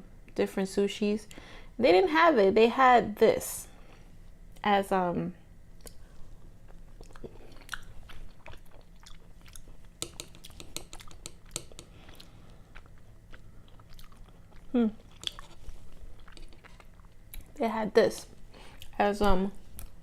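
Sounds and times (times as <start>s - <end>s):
chewing with wet mouth clicks: 5.8s - 17.6s.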